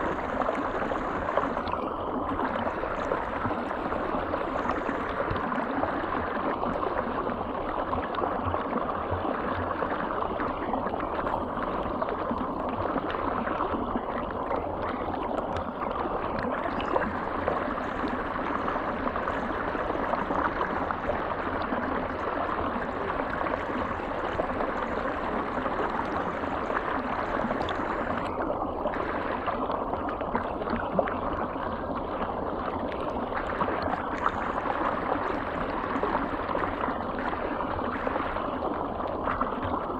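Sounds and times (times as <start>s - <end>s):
river water flowing: 9.5s - 39.9s.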